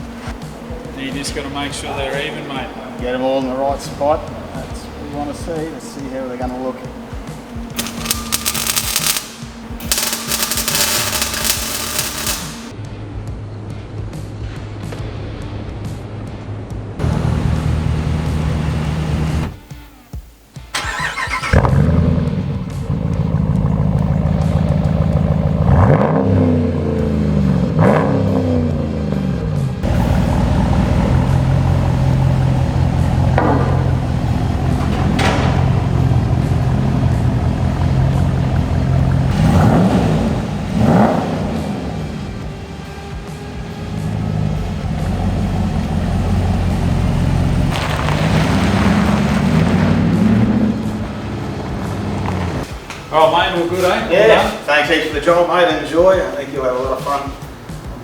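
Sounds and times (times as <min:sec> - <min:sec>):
truck engine idling and revving: 0:00.0 - 0:19.7, 0:20.7 - 0:52.9
rushing noise: 0:06.8 - 0:12.7.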